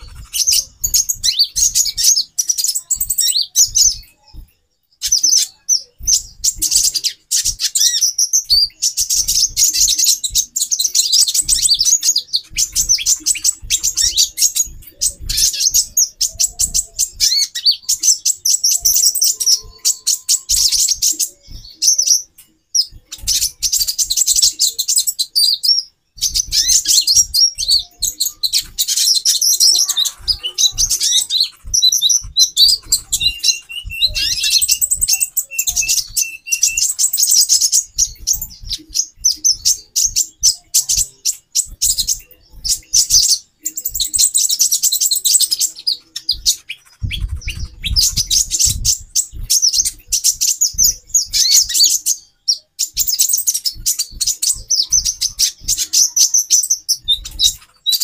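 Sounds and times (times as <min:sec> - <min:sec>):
birds chirping: 0:00.0 - 0:58.0
soft low thumps: 0:08.4 - 0:19.8, 0:20.5 - 0:24.6, 0:29.5 - 0:45.2, 0:45.8 - 0:52.4.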